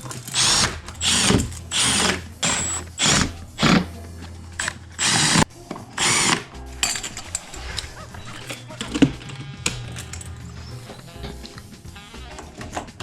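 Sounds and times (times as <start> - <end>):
cordless drill whining in bursts: 0.3 - 3.8, 4.6 - 5.4, 6.0 - 6.4.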